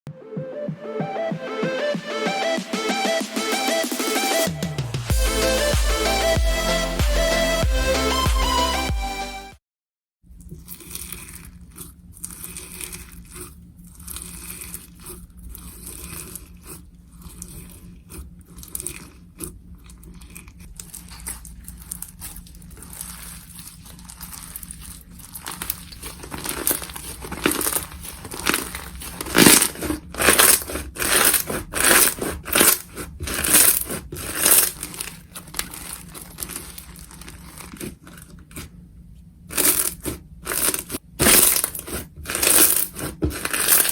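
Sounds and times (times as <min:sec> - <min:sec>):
slime squishing: 0:10.3 - 0:43.9
slime crackling by hand: 0:10.4 - 0:38.8, 0:39.5 - 0:43.9.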